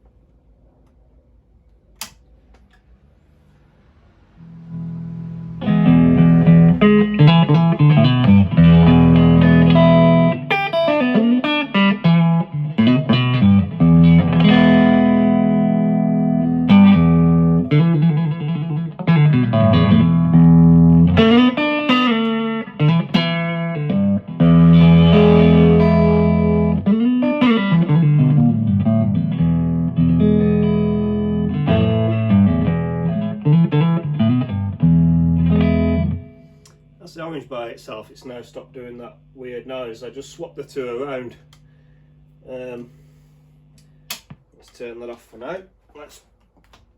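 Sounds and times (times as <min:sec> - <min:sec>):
electric guitar chords strummed: 0:04.4 - 0:36.6.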